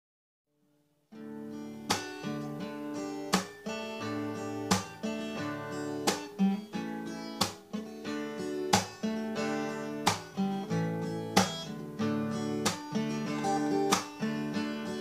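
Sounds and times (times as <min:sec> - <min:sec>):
acoustic guitar strumming: 0:01.2 - 0:15.0.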